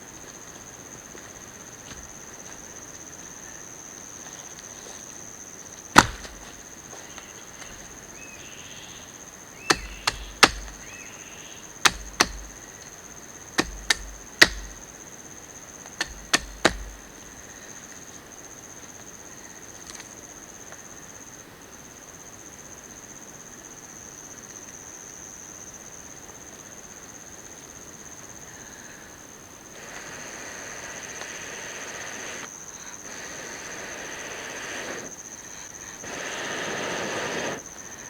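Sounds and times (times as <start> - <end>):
high insect drone: 0.0 - 38.0
wood being chopped: 5.9 - 8.2, 9.6 - 11.1, 11.8 - 13.0, 13.6 - 15.0, 16.0 - 17.3.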